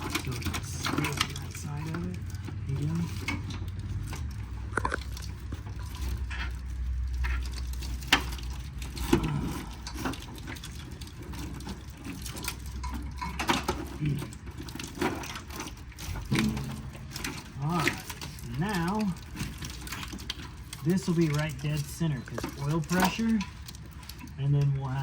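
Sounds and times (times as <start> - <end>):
clicks and knocks of handling parts: 0.0 - 25.0
steady low hum: 15.8 - 24.5.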